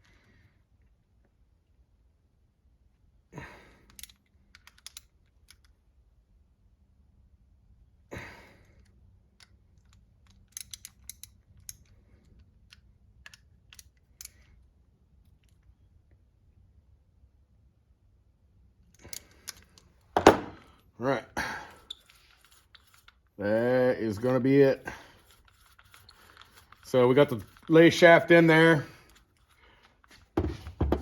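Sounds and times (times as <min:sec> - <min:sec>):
small metal clicks and knocks: 0:03.9 - 0:05.8, 0:09.3 - 0:14.5, 0:18.9 - 0:20.8
loud clunks: 0:20.2 - 0:20.6.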